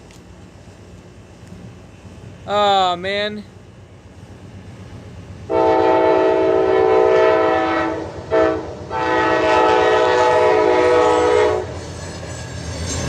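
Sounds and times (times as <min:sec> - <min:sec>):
locomotive air horn blasts: 0:05.5 - 0:11.8.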